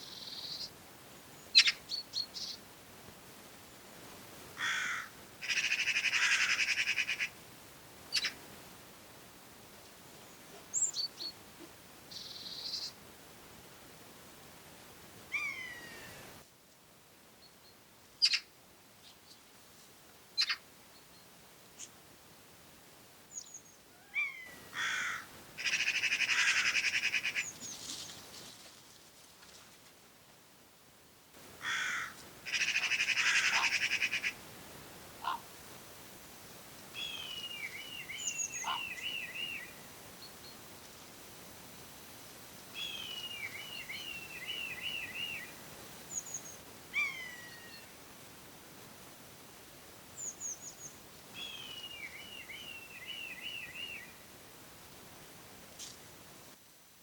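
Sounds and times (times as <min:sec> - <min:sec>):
birds calling: 0:04.6 - 0:07.3, 0:23.3 - 0:28.0, 0:31.6 - 0:34.4, 0:37.0 - 0:40.6
birds calling and chattering: 0:37.0 - 0:40.6.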